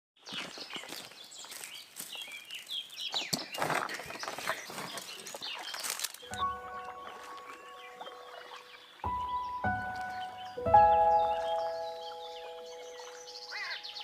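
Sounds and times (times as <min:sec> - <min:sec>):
birds chirping: 0:00.2 - 0:14.0
frogs croaking: 0:06.3 - 0:14.0
music: 0:06.3 - 0:14.0.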